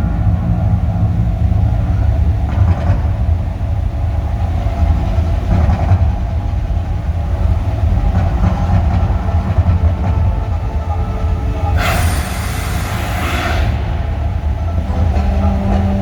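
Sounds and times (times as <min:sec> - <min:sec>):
eruption sound effects over loudspeakers: 0:11.6 - 0:15.9.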